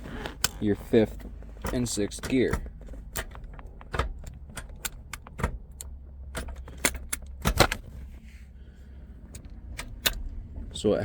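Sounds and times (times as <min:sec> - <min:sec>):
metallic clicks and clacks: 0:00.4 - 0:07.8.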